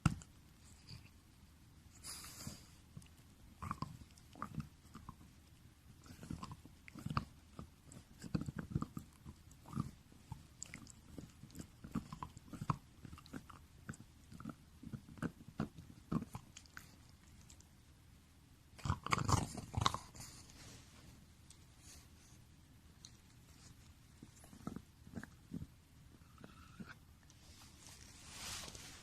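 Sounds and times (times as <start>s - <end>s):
dog crunching a chew toy: 2.0s - 17.7s, 18.7s - 20.6s, 22.9s - 27.0s.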